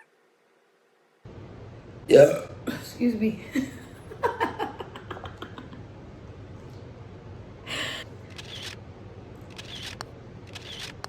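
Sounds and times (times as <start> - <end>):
camera shutter clicks: 8.3 - 8.8, 9.5 - 11.0.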